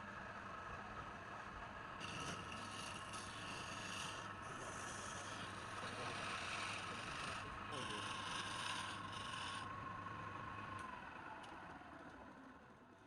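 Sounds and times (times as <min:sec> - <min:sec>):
wood lathe humming: 0:02.0 - 0:09.6
tool scraping spinning wood: 0:02.0 - 0:09.7.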